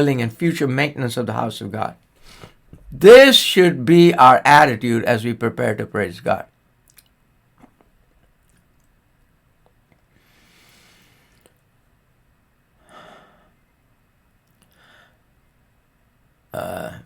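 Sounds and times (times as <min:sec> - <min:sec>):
man breathing: 0:02.2 - 0:02.6, 0:10.1 - 0:11.5, 0:12.8 - 0:13.7, 0:14.7 - 0:15.3.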